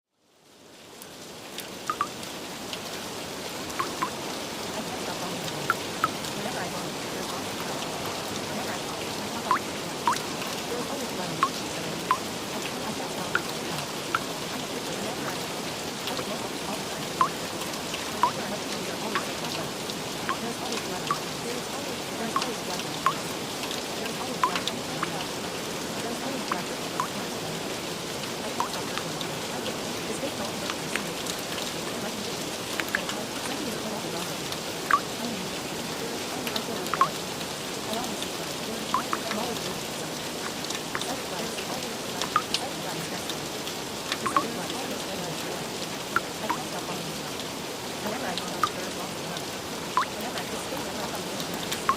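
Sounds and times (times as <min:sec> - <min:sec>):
steady rain hiss: 0:00.1 - 0:51.9
sharp drips: 0:01.6 - 0:03.0, 0:03.6 - 0:51.9
water drops plinking: 0:01.9 - 0:02.2, 0:03.7 - 0:04.2, 0:04.8 - 0:19.6, 0:20.2 - 0:23.4, 0:24.0 - 0:25.4, 0:26.0 - 0:27.4, 0:28.4 - 0:32.2, 0:34.9 - 0:35.4, 0:36.2 - 0:37.3, 0:37.9 - 0:43.4, 0:44.1 - 0:45.5, 0:46.1 - 0:47.0, 0:48.0 - 0:49.2, 0:49.9 - 0:51.9.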